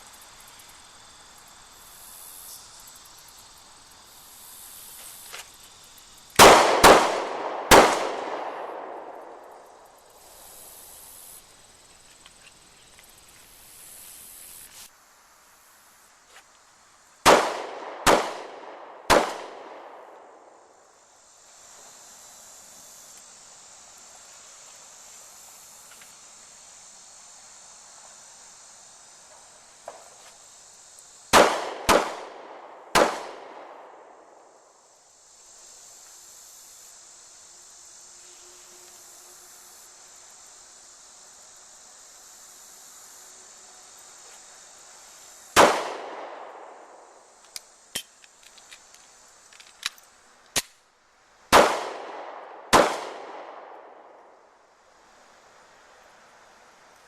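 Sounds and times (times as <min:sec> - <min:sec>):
insects chirring: 0:00.0 - 0:57.0
pistol shots with echo: 0:06.4 - 0:09.4, 0:17.3 - 0:20.0, 0:31.3 - 0:33.8, 0:45.6 - 0:46.4, 0:51.5 - 0:53.7.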